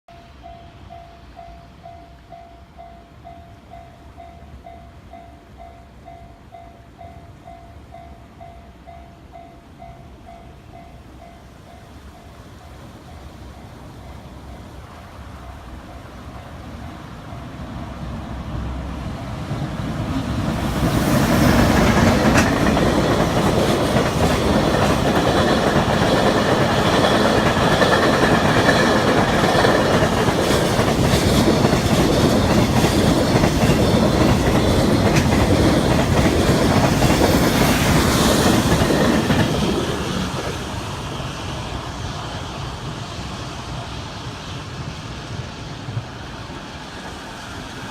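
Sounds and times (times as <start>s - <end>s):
freight train wheels rumbling: 9.7s - 47.9s.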